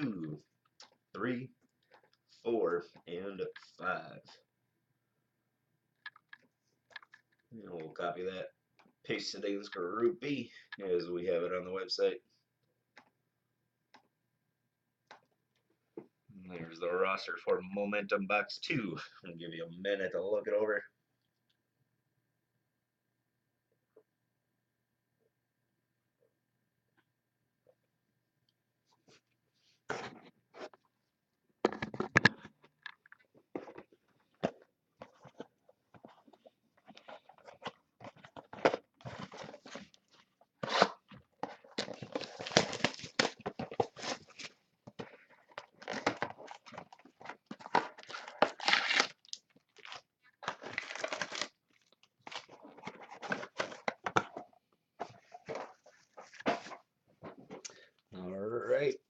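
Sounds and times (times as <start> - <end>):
plastic wrapping crinkling and tearing: 39.1 - 44.5, 45.5 - 53.8.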